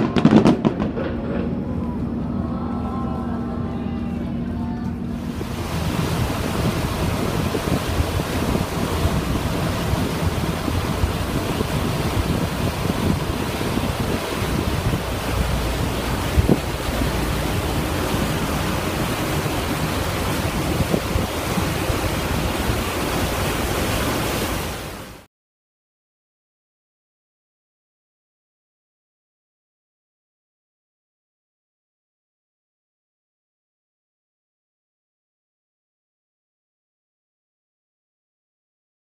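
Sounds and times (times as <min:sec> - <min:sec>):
water around boat: 0:00.0 - 0:25.3
wind on microphone: 0:01.6 - 0:25.1.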